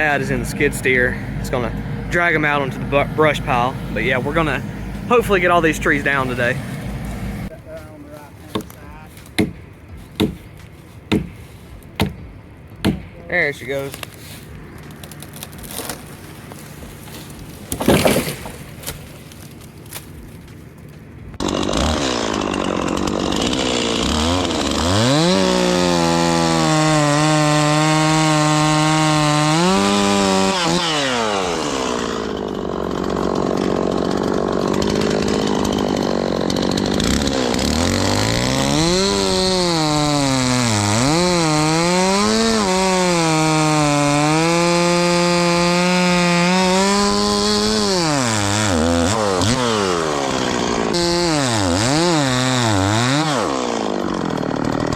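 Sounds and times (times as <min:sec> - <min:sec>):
chainsaw revving: 0:00.0 - 0:07.5, 0:21.4 - 0:54.9.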